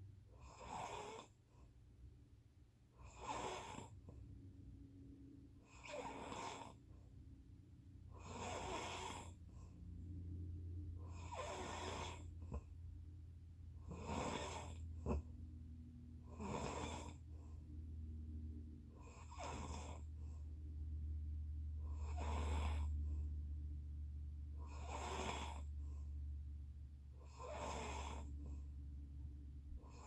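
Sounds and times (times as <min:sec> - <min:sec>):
person snoring faintly: 0:00.4 - 0:01.3, 0:03.0 - 0:04.0, 0:05.6 - 0:06.8, 0:08.1 - 0:09.4, 0:11.0 - 0:12.6, 0:13.8 - 0:15.3, 0:16.2 - 0:17.4, 0:18.9 - 0:20.4, 0:21.8 - 0:23.2, 0:24.6 - 0:26.1, 0:27.2 - 0:28.6
steady low hum: 0:03.9 - 0:30.0.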